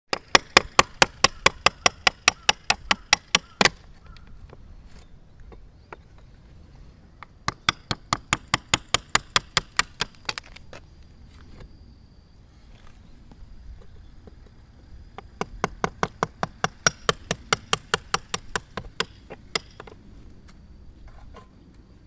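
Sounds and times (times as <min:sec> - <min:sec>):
rapid hammer strikes: 0:00.1 - 0:03.8, 0:07.5 - 0:10.2, 0:15.3 - 0:19.9.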